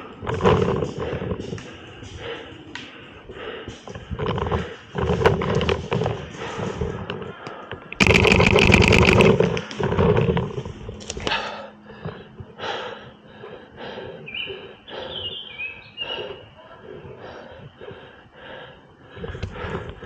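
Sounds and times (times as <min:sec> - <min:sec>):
heavy breathing: 0:00.0 - 0:09.2, 0:09.8 - 0:20.0
scuffling with sharp clicks: 0:00.0 - 0:11.4.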